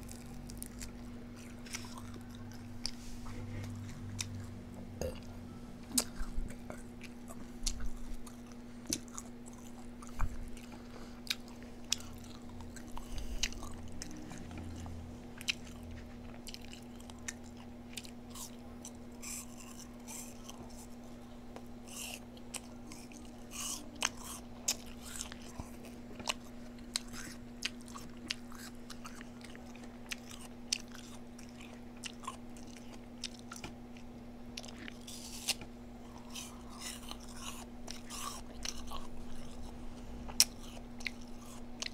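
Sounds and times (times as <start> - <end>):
chewing and biting food: 0.0 - 41.9
steady low hum: 0.0 - 41.9.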